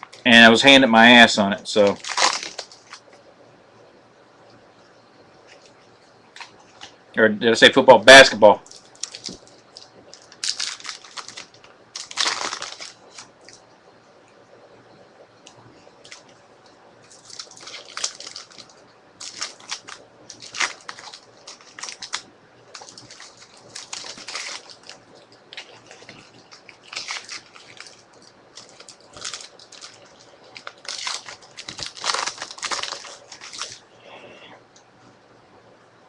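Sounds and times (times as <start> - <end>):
card wrappers crinkling: 1.8 - 3.2, 8.6 - 13.6, 15.9 - 16.4, 17.0 - 33.9.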